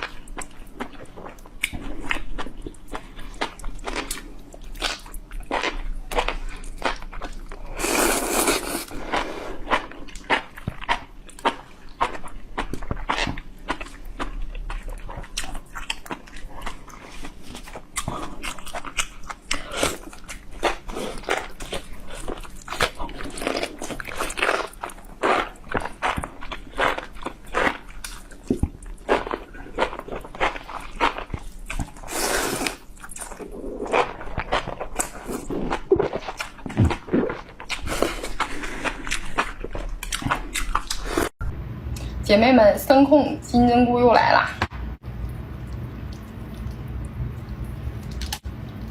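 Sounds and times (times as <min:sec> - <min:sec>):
chewing and slurping: 0:00.0 - 0:41.3, 0:45.2 - 0:48.9
wet crackly clicks: 0:45.6 - 0:48.9.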